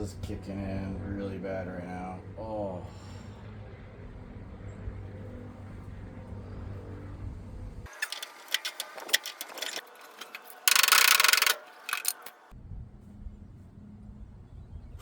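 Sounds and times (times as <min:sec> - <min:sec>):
steady low hum: 0:00.0 - 0:15.0
metal clicking and rattling: 0:07.9 - 0:12.5.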